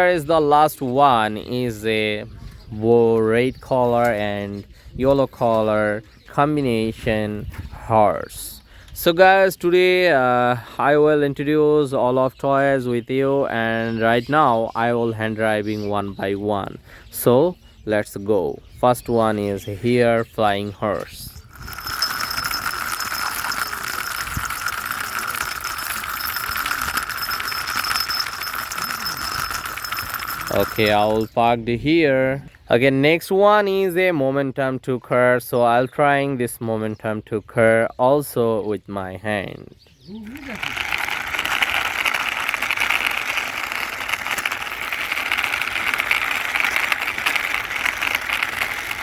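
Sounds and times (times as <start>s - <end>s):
toy wheels rattling: 21.3s - 31.4s, 40.2s - 49.0s.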